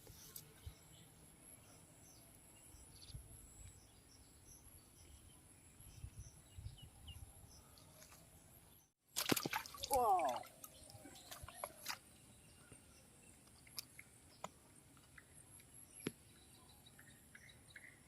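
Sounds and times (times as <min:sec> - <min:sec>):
loud splashing and clicks: 0:09.2 - 0:10.8.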